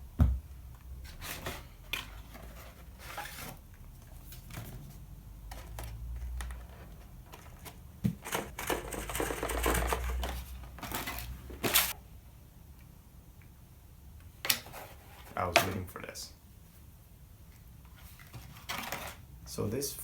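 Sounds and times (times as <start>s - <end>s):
packaging clicks and crinkling: 5.4s - 12.0s.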